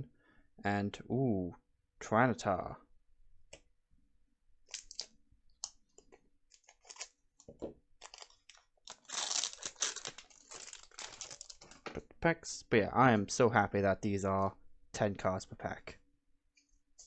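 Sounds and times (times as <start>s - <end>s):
foil wrapper crinkling: 4.7s - 5.7s, 6.5s - 11.9s.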